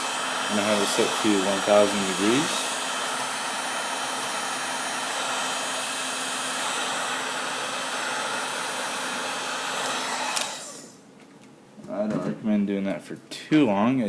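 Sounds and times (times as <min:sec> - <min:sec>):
heat gun blower hissing: 0:00.0 - 0:11.0.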